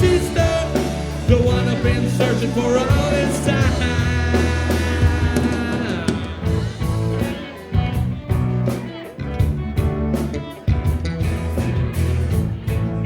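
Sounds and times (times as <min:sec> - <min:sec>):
bass guitar: 0:00.0 - 0:13.0
drums: 0:00.0 - 0:13.0
electric guitar: 0:00.0 - 0:13.0.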